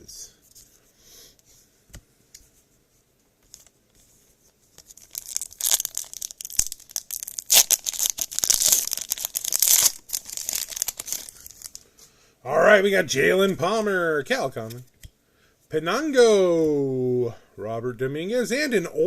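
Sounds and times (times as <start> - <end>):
wrapper tearing and crinkling: 4.8 - 11.8.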